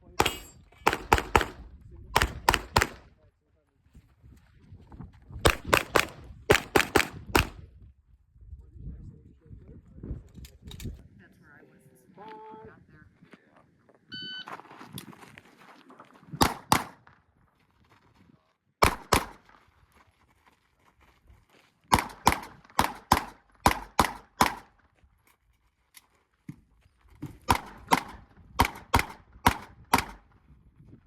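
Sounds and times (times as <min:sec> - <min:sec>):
pistol shots: 0:00.1 - 0:03.1, 0:05.5 - 0:07.6, 0:16.4 - 0:17.1, 0:18.8 - 0:19.4, 0:21.9 - 0:24.7, 0:27.5 - 0:30.2.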